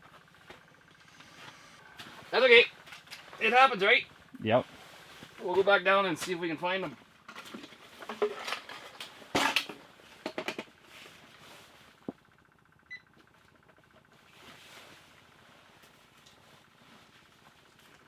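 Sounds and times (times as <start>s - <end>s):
short electronic beep: 0.9s - 1.9s.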